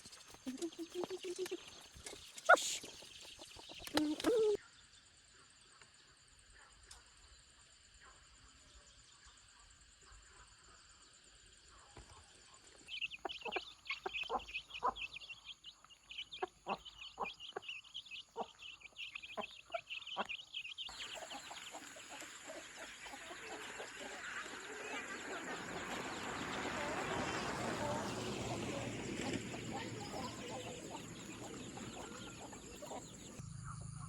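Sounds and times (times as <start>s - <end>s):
chickens clucking: 0.0s - 4.6s, 12.9s - 33.4s.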